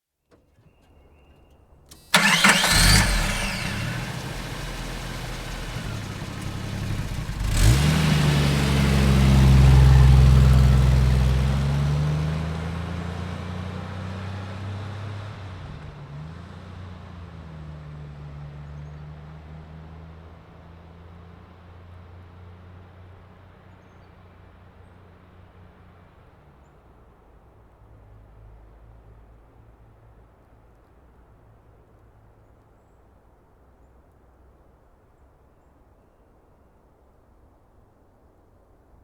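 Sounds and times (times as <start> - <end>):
engine cranking and starting: 1.9 - 9.2.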